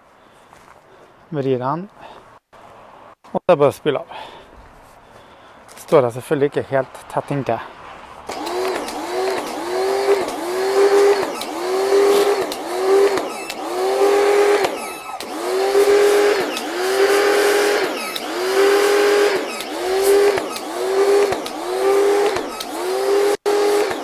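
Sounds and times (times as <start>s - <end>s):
pressure washer motor hum: 8.2s - 24.0s.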